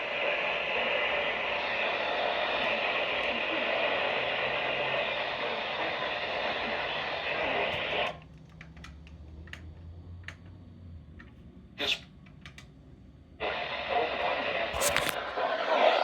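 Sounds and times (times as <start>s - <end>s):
radio static hiss: 0.0s - 8.2s, 11.8s - 12.1s, 13.4s - 16.0s.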